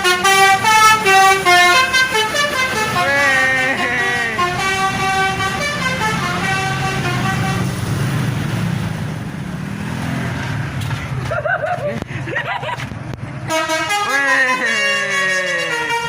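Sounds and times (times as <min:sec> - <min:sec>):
multi-tone bus horn tune: 0:00.0 - 0:08.0, 0:13.4 - 0:16.0
bus engine rumbling: 0:00.0 - 0:16.0.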